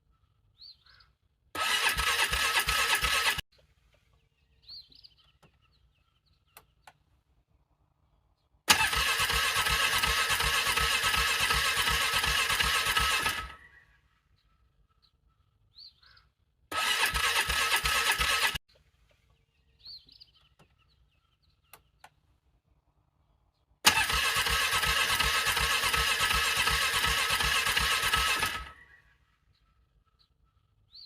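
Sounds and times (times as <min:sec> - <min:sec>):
engine cranking: 0:01.6 - 0:03.4, 0:08.7 - 0:13.7, 0:16.7 - 0:18.6, 0:23.8 - 0:28.9.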